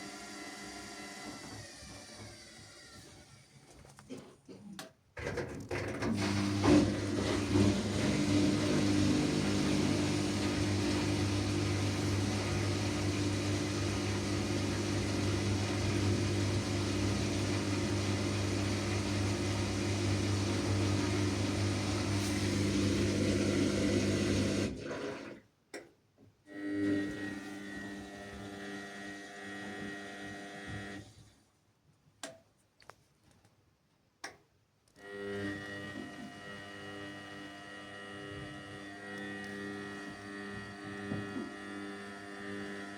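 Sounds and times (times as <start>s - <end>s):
washing machine motor hum: 5.8s - 25.4s, 26.5s - 31.2s, 35.0s - 42.9s.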